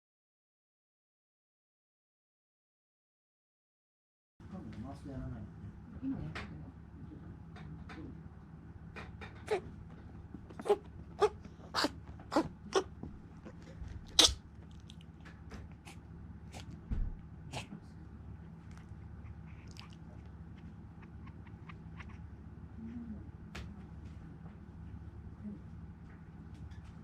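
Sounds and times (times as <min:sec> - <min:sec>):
small dog coughing: 0:09.4 - 0:09.7, 0:10.5 - 0:14.4.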